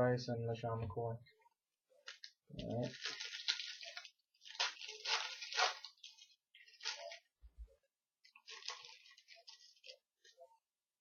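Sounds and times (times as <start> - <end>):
foil pack tearing and crinkling: 2.0 - 7.3, 8.3 - 10.0.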